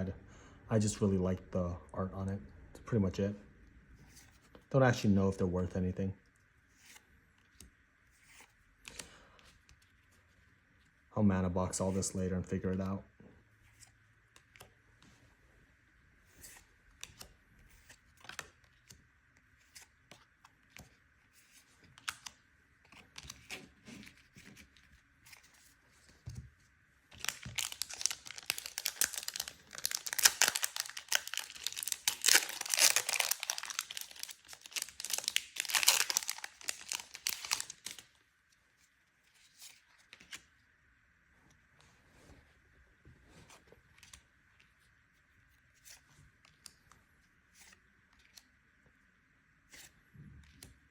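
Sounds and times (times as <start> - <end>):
foil wrapper tearing and crinkling: 27.2 - 38.0.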